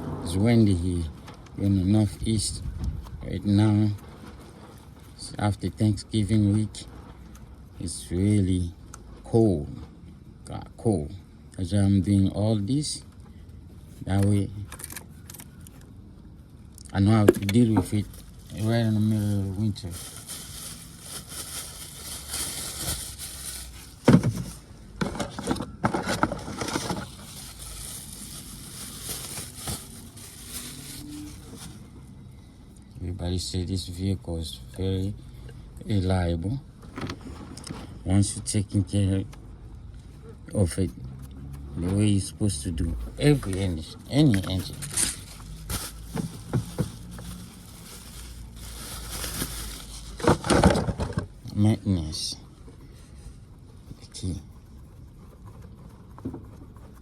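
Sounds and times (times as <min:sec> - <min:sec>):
wind noise: 0:02.4 - 0:03.2
clattering and rattling: 0:50.1 - 0:51.3.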